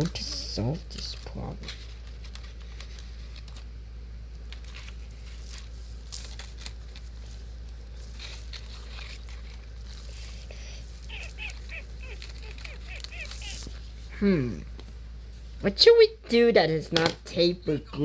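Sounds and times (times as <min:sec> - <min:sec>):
steady low hum: 0:00.0 - 0:18.0
paper rustling and crinkling: 0:00.2 - 0:14.1.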